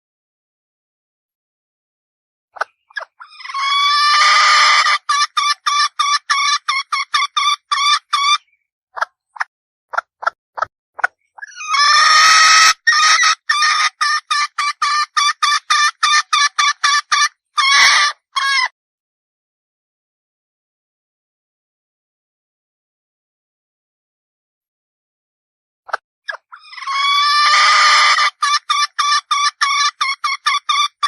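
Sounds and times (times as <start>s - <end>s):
hen calling and clucking: 2.6s - 18.7s, 25.9s - 31.0s.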